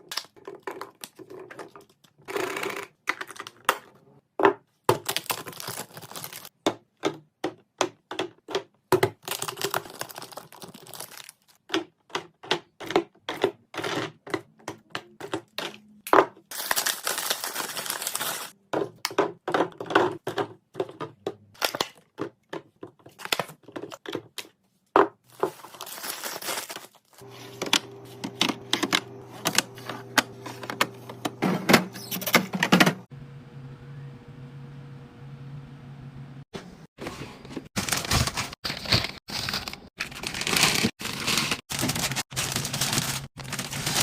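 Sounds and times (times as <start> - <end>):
plastic containers clicking and knocking: 0.1 - 5.6, 6.2 - 11.0, 11.6 - 16.5, 18.6 - 25.6
plastic wrappers crinkling: 5.0 - 6.5, 9.2 - 11.6, 16.5 - 18.6, 25.3 - 27.5, 37.8 - 44.0.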